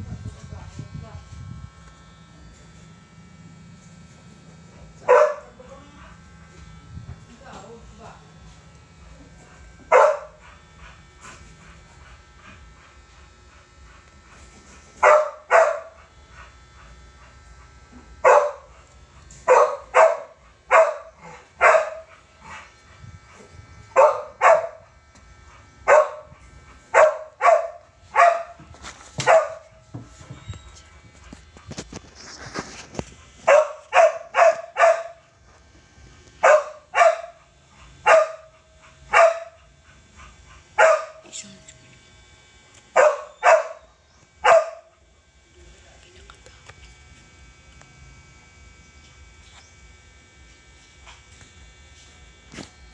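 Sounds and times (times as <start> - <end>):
dog barking: 5.0 - 6.2, 9.9 - 10.5, 15.0 - 16.0, 18.2 - 18.7, 19.4 - 22.1, 23.9 - 24.8, 25.9 - 29.8, 33.4 - 35.3, 36.4 - 39.6, 40.8 - 41.3, 42.9 - 45.0.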